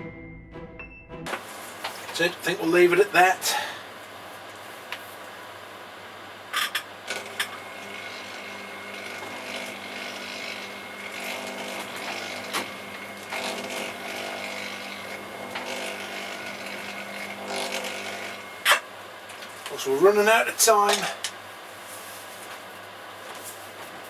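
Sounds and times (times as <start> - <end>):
potter's wheel motor whining: 6.6 - 21.3.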